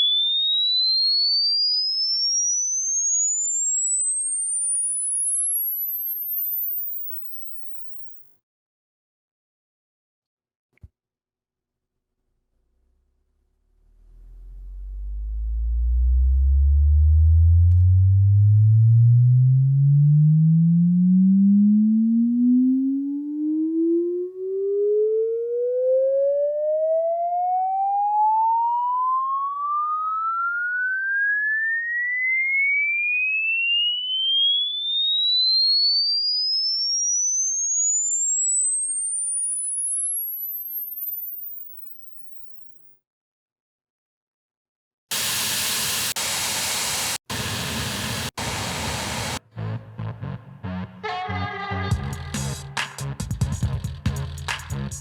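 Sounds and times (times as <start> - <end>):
rising sine tone sweep: 0.0 - 8.3, 12.2 - 32.5, 33.5 - 42.9.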